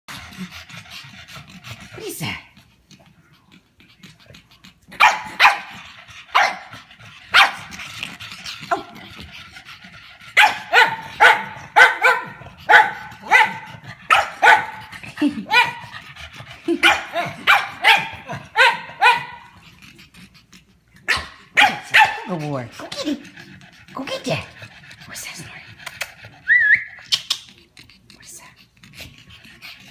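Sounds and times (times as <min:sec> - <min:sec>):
dog barking: 0:05.0 - 0:05.7, 0:06.3 - 0:06.7, 0:07.3 - 0:07.6, 0:10.4 - 0:14.8, 0:16.8 - 0:19.4, 0:21.1 - 0:22.3.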